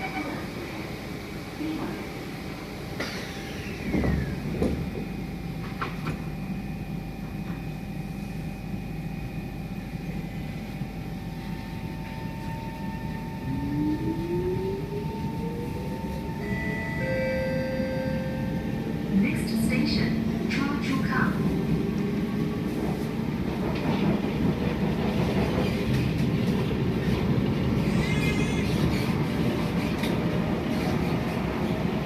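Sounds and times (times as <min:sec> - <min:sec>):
metro train carriage hum: 0:00.0 - 0:32.0
traction motor whine: 0:11.4 - 0:20.5.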